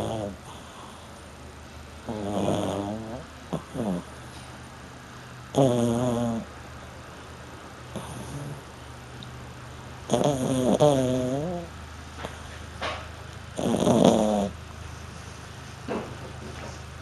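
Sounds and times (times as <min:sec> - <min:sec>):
dog snoring: 0:00.0 - 0:01.2, 0:02.0 - 0:04.4, 0:05.5 - 0:06.5, 0:07.9 - 0:08.8, 0:10.0 - 0:12.5, 0:13.5 - 0:14.6.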